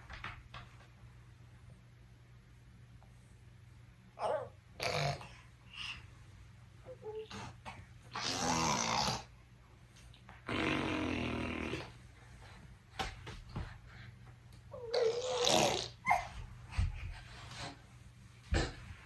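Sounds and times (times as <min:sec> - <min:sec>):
baby rasping vocal noises: 0:04.2 - 0:05.4, 0:06.9 - 0:09.3, 0:14.8 - 0:16.4.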